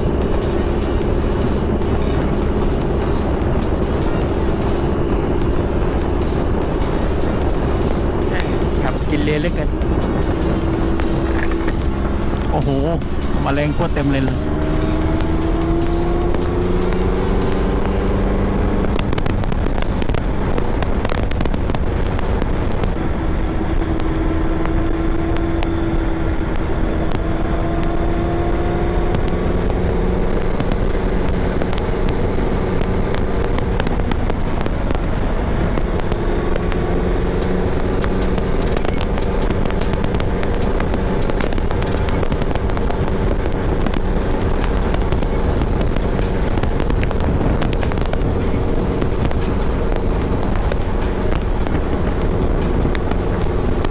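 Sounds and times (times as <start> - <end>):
motorcycle engine running: 0.0 - 53.9
wind rush on microphone: 0.0 - 53.9.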